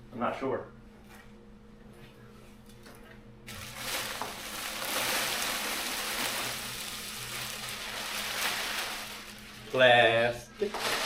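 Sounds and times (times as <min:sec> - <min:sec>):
plastic wrap rustling and crinkling: 0:03.5 - 0:11.0.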